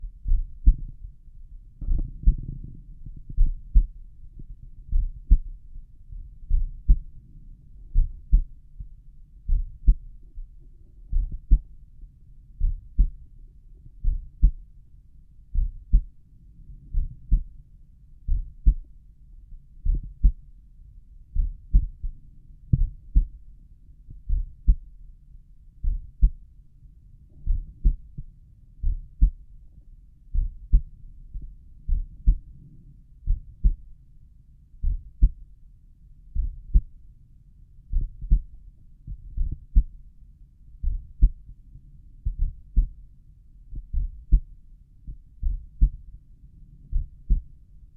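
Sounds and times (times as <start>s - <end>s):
heartbeat through stethoscope: 0.0s - 7.3s, 7.9s - 11.8s, 12.6s - 13.2s, 13.9s - 14.7s, 15.5s - 17.6s, 18.3s - 18.9s, 19.8s - 20.4s, 21.3s - 23.4s, 24.1s - 24.9s, 25.8s - 26.4s, 27.3s - 29.6s, 30.3s - 34.0s, 34.8s - 35.4s, 36.3s - 37.0s, 37.9s - 38.5s, 39.1s - 40.0s, 40.8s - 41.6s, 42.2s - 43.0s, 43.7s - 46.1s, 46.7s - 47.6s.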